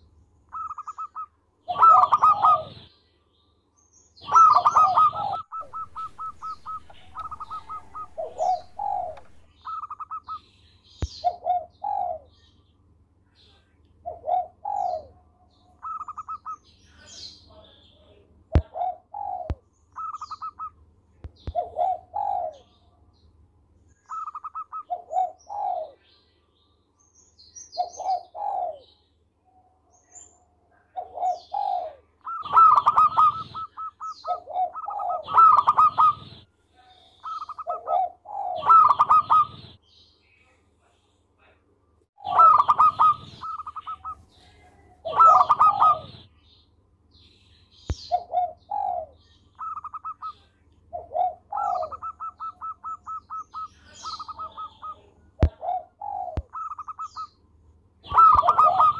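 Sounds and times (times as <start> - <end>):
dove cooing: 0.5 - 2.9, 4.2 - 10.4, 11.1 - 12.4, 14.0 - 16.7, 18.6 - 20.8, 21.4 - 22.9, 24.1 - 26.0, 27.8 - 28.9, 30.9 - 39.8, 42.2 - 46.3, 48.0 - 57.4, 58.0 - 58.9.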